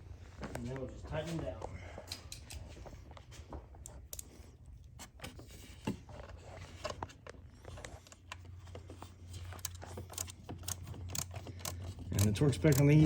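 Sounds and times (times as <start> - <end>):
ratchet scraping: 9.5 - 13.0
ratchet clicking: 9.6 - 13.0.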